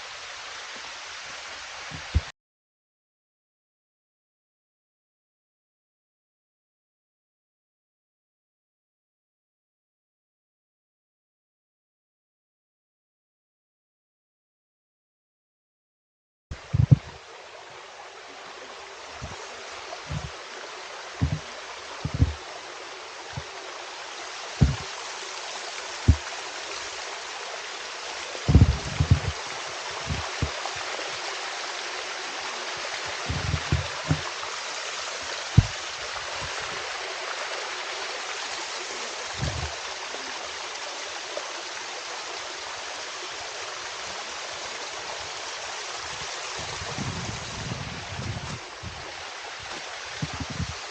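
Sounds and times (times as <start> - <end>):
running water rushing: 0.0 - 2.3, 16.5 - 50.9
low thumps: 16.6 - 17.2, 20.1 - 20.4, 21.2 - 22.4, 24.6 - 24.9, 26.1 - 26.3, 28.5 - 30.6, 33.2 - 34.3, 35.5 - 35.8, 39.4 - 39.8, 50.2 - 50.8.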